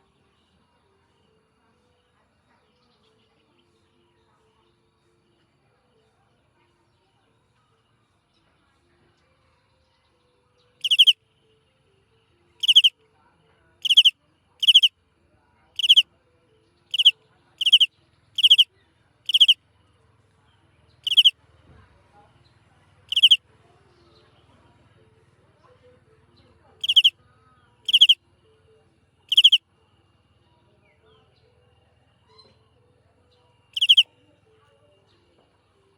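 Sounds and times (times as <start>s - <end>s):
small animal buzzy calls: 10.8s - 11.2s, 12.6s - 12.9s, 13.8s - 14.9s, 15.8s - 16.0s, 16.9s - 18.7s, 19.3s - 19.6s, 21.0s - 21.3s, 23.1s - 23.4s, 26.8s - 27.1s, 27.9s - 28.2s, 29.3s - 29.6s, 33.8s - 34.1s.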